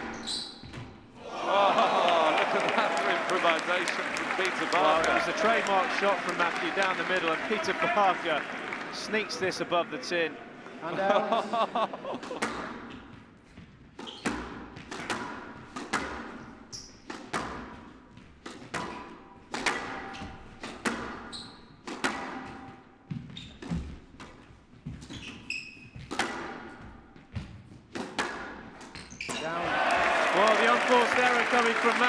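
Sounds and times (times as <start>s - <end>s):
shoes squeaking on court floor: 0.0s - 1.2s, 12.5s - 15.7s, 16.4s - 19.4s, 20.0s - 29.6s
squash ball hits echoing: 12.3s - 13.0s, 14.0s - 16.5s, 17.1s - 24.4s, 26.0s - 28.8s.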